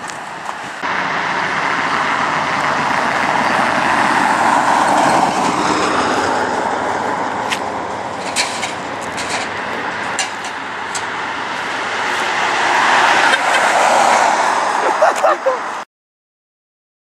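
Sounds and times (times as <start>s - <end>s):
car passing by: 0.5s - 8.4s, 10.9s - 15.8s.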